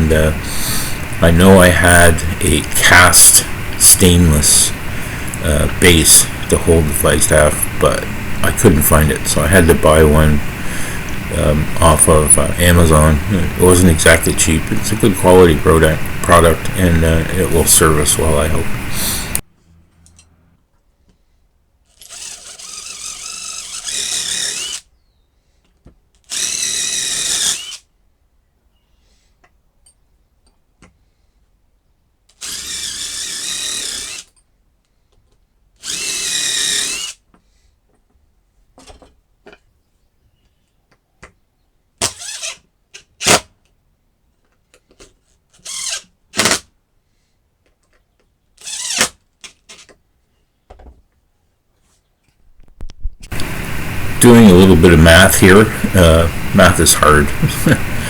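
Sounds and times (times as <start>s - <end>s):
power drill running: 0.3s - 19.4s, 22.0s - 24.9s, 26.3s - 27.8s, 32.4s - 34.3s, 35.8s - 37.2s, 45.6s - 46.0s, 53.3s - 58.0s.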